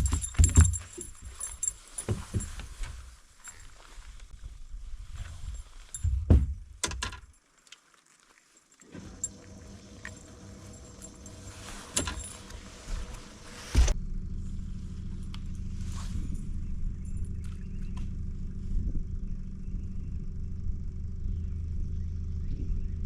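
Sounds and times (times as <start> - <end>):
hard thump: 0.0 - 3.0, 6.0 - 6.8, 11.9 - 14.0
low motor hum: 8.8 - 23.0.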